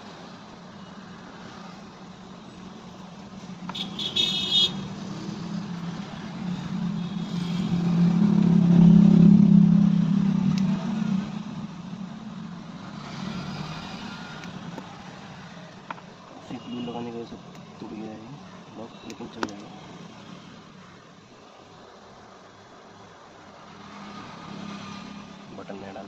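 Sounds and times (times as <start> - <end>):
vehicle engine passing by: 4.8 - 15.5, 23.7 - 25.6.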